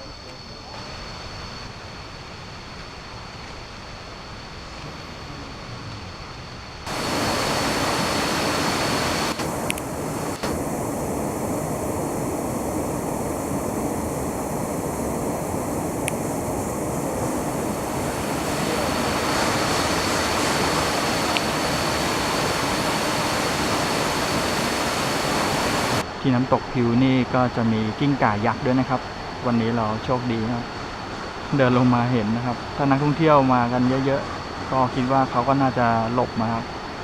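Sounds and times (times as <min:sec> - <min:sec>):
waterfall rushing: 0:06.9 - 0:26.0.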